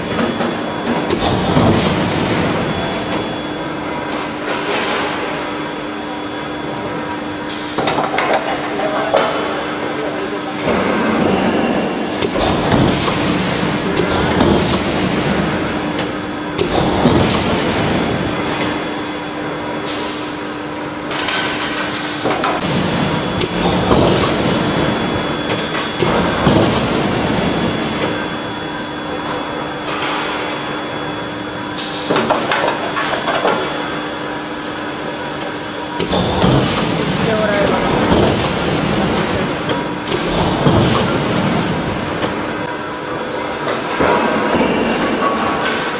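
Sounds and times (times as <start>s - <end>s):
machinery humming: 0.0s - 45.9s
loud metal clanks and bangs: 43.8s - 45.9s.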